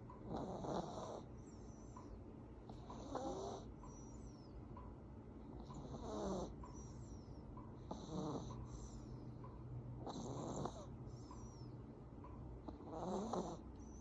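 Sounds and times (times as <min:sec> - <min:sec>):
puppy snoring: 0:00.2 - 0:02.0, 0:02.6 - 0:04.5, 0:05.4 - 0:09.3, 0:10.0 - 0:11.8, 0:12.6 - 0:14.0.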